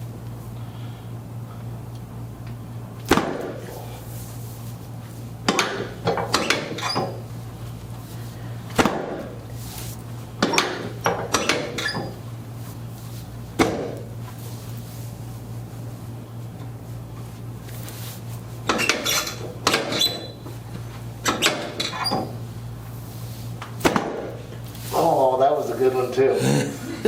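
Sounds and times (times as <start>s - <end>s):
steady low hum: 0.0s - 27.0s
spine adjustment thumps and pops: 8.7s - 9.4s, 13.6s - 14.1s.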